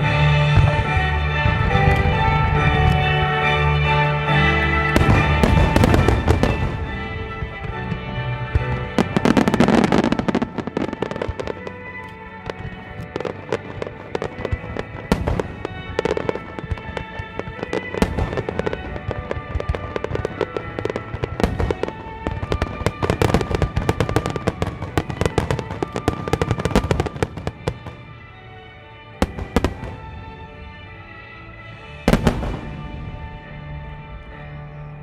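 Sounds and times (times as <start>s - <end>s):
fireworks bursting and crackling: 0.0s - 31.0s, 31.6s - 34.6s
music playing: 0.0s - 35.0s
firework booms: 5.0s - 11.8s, 12.4s - 28.1s, 32.0s - 33.8s.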